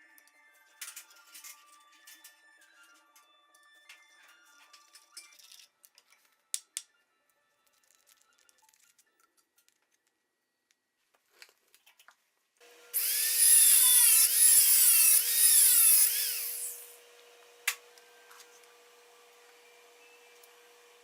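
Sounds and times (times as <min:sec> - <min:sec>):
motor hum: 0:12.6 - 0:21.0
power tool working material: 0:12.6 - 0:21.0.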